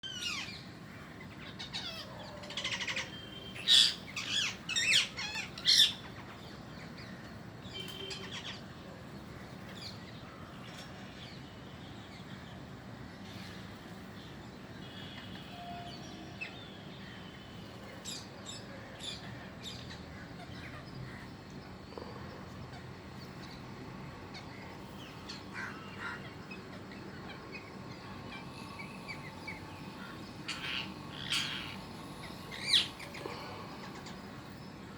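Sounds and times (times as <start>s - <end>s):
parrots calling: 1.4s - 6.3s, 24.3s - 34.3s.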